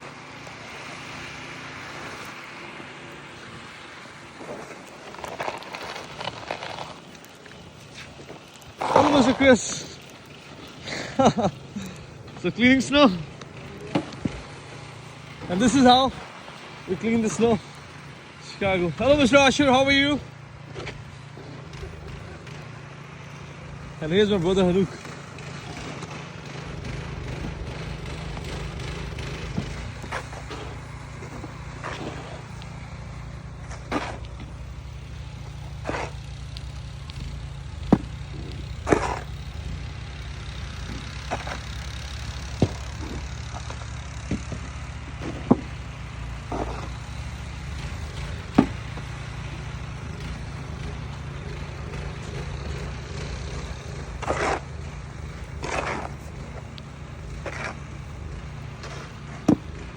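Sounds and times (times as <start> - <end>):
engine droning: 0.0 - 59.9
short scrapes: 27.0 - 45.8.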